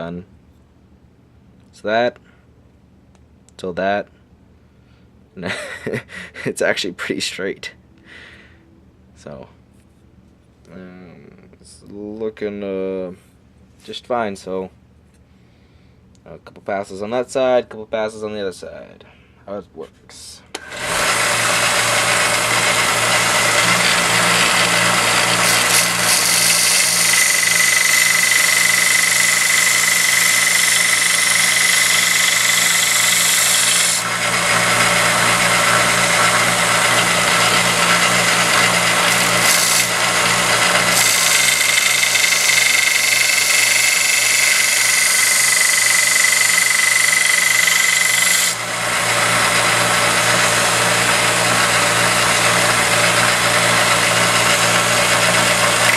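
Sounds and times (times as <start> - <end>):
blade grinding on belt: 20.6 - 55.9
grinder motor humming: 20.6 - 55.9.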